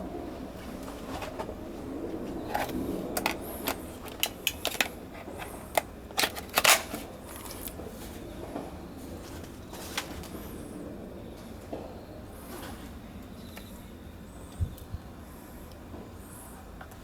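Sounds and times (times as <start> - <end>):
low steady background noise: 0.0 - 17.0.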